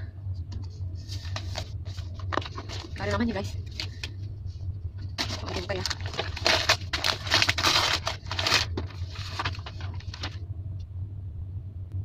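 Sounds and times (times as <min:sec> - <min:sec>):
wrapping paper tearing and crinkling: 0:01.2 - 0:04.1, 0:05.2 - 0:10.4.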